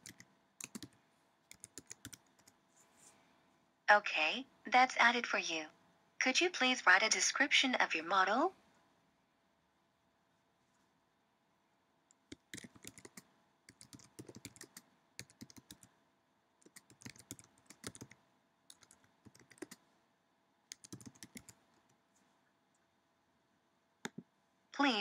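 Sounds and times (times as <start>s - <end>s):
keyboard typing: 0.0s - 2.6s, 12.1s - 15.9s, 16.6s - 19.9s, 20.7s - 22.0s.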